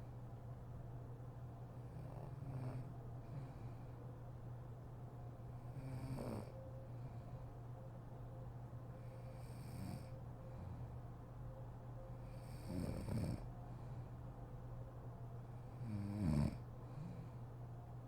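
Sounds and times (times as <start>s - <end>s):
steady low hum: 0.0s - 18.0s
woman snoring: 1.9s - 3.5s, 5.7s - 6.6s, 9.3s - 10.1s, 12.4s - 13.5s, 15.8s - 17.2s.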